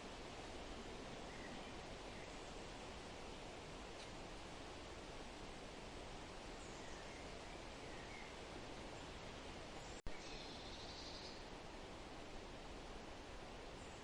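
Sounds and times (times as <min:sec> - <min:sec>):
forest rustling hiss: 0:00.0 - 0:14.0
birds calling faintly: 0:01.2 - 0:04.3, 0:06.3 - 0:12.0.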